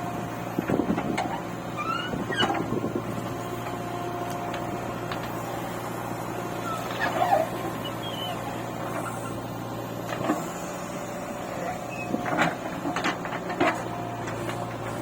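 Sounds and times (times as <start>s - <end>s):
diesel engine running: 0.0s - 15.0s
short high squeaks: 1.8s - 2.6s, 6.6s - 9.4s, 11.6s - 12.2s.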